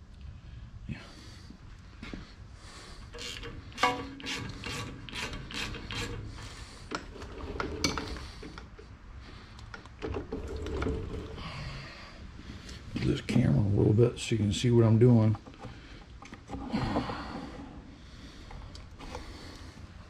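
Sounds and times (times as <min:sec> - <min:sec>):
clicks and knocks on metal parts: 0:03.2 - 0:06.2.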